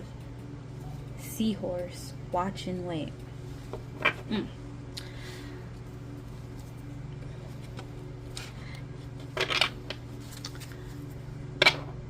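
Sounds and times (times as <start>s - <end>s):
low steady hum: 0.0s - 12.0s
cards rustling: 7.5s - 11.1s.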